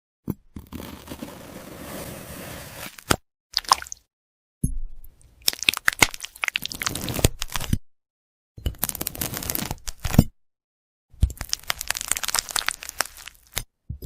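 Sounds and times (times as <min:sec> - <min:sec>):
brittle crackling and crunching: 0:05.4 - 0:07.7, 0:08.7 - 0:10.2, 0:11.2 - 0:13.7.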